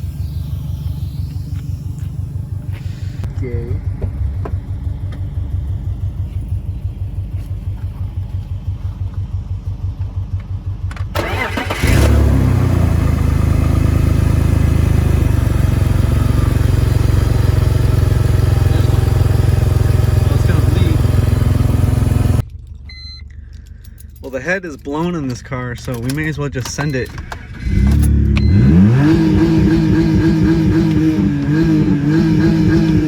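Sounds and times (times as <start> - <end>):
car engine running: 0.0 - 33.0
person speaking: 2.8 - 4.0, 18.3 - 21.2
car engine cranking on starter: 10.9 - 22.8, 25.4 - 33.0.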